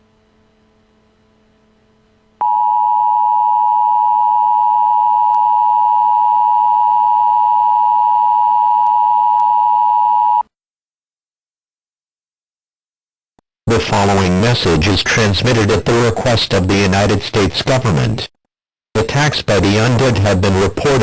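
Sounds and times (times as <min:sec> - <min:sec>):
loud two-tone alarm: 0:02.4 - 0:10.4.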